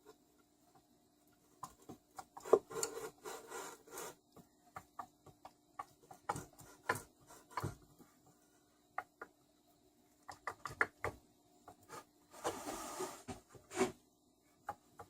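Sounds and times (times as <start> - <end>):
scraping and rubbing: 2.3 - 4.2, 11.8 - 14.0.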